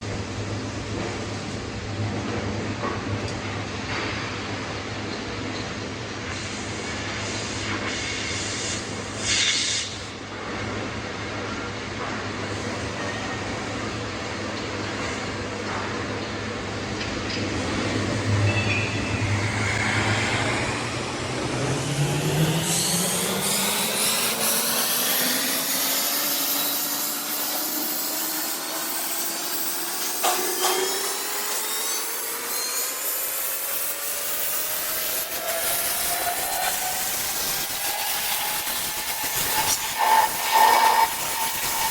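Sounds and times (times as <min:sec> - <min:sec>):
machine motor whining: 0:17.6 - 0:41.9
steady hiss: 0:33.6 - 0:41.9.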